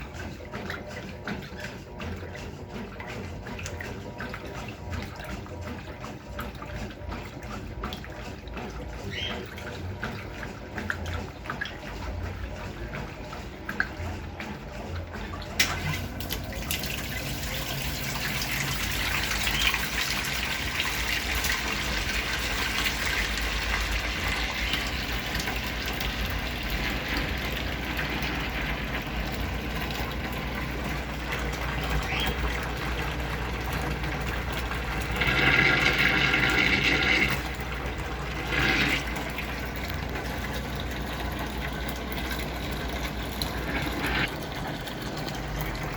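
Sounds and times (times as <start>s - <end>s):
washing machine filling with water: 0.0s - 45.9s.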